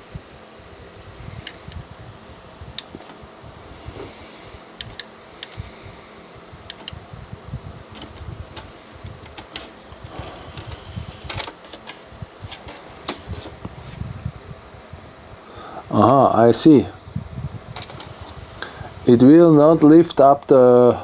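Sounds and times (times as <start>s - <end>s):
disc mechanism clicks: 2.7s - 3.2s, 4.7s - 5.6s, 6.6s - 7.0s, 7.9s - 13.3s, 17.8s - 18.2s.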